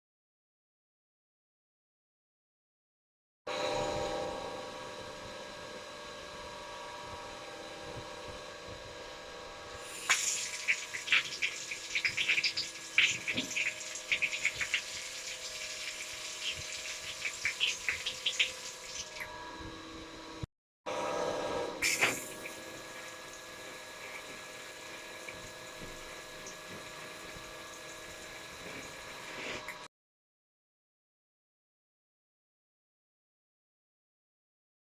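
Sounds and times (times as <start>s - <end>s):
tap water running and splashing: 9.8s - 19.3s, 21.8s - 29.8s.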